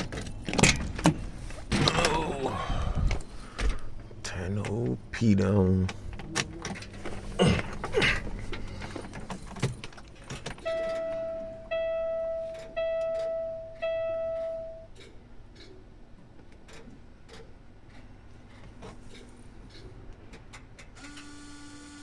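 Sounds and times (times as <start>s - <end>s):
dashboard warning chime: 10.5s - 14.9s.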